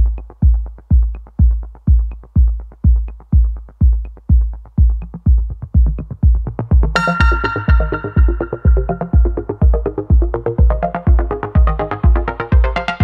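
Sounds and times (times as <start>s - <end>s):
heavy kick drum: 0.0s - 13.0s
hi-hat ticks: 0.0s - 13.0s
bright synth chord: 7.0s - 9.6s.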